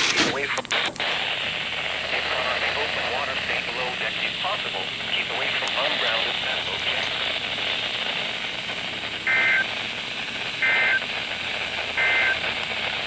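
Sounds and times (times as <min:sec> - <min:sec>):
radio receiver hiss: 0:00.0 - 0:13.0
two-tone digital data bursts: 0:09.3 - 0:09.7, 0:10.6 - 0:11.1, 0:12.0 - 0:12.4.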